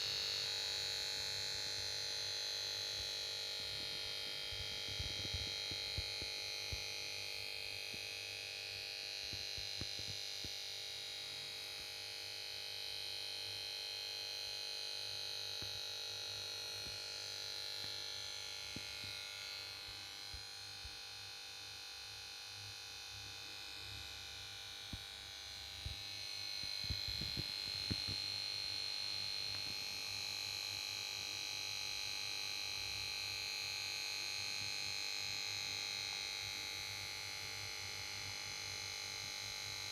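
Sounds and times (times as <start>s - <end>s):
high-pitched electrical whine: 13.9s - 39.9s.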